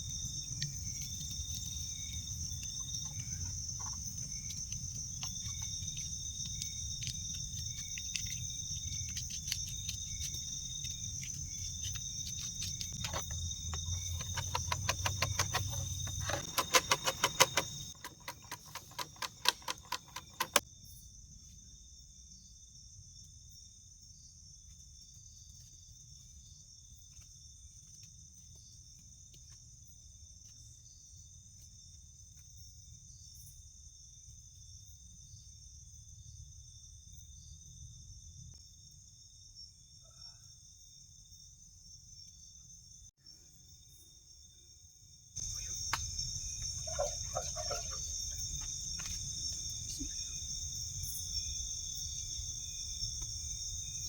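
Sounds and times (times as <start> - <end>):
insect chirping phrases: 0.0 - 21.1, 38.6 - 54.0
crickets trilling: 0.0 - 54.0
sharp clicks and snaps: 3.8 - 20.6.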